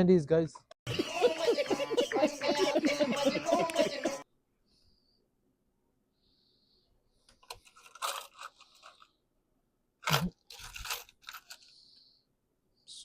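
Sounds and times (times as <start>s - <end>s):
candy wrapper crinkling: 10.4s - 11.8s.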